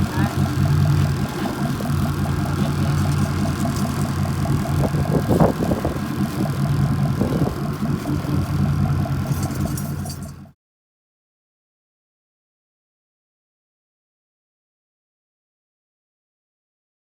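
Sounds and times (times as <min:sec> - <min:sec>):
boat engine idling: 0:00.0 - 0:10.6.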